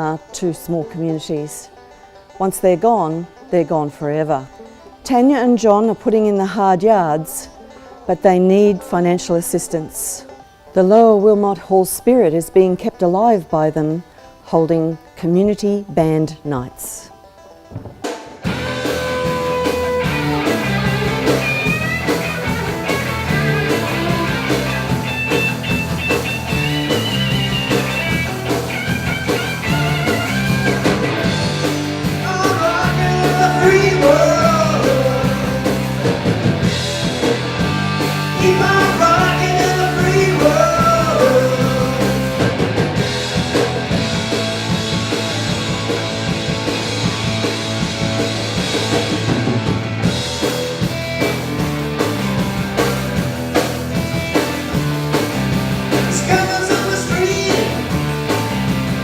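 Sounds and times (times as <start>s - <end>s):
electric guitar: 17.6s - 59.0s
stepping bass line: 17.8s - 59.0s
person singing: 32.2s - 36.1s, 38.3s - 42.6s, 56.0s - 57.9s.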